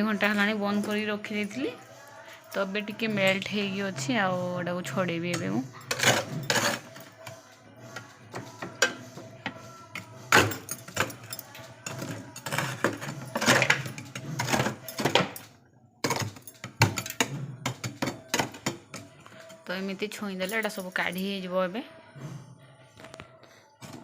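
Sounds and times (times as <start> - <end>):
ice chunks knocking and clattering: 16.0 - 19.1.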